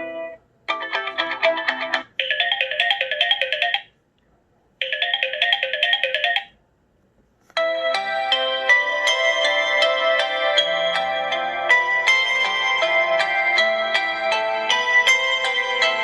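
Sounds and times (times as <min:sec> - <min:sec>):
bell-like phone ringtone: 0:00.0 - 0:03.9, 0:04.8 - 0:06.6.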